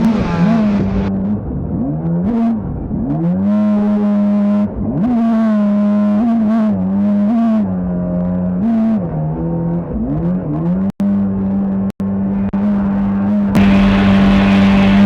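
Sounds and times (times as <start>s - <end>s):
boat motor running: 0.0s - 1.4s, 12.0s - 15.0s.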